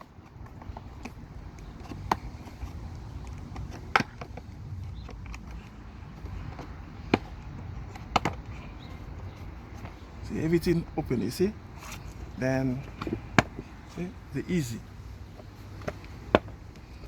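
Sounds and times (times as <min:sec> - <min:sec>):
low background rumble: 0:00.2 - 0:17.0.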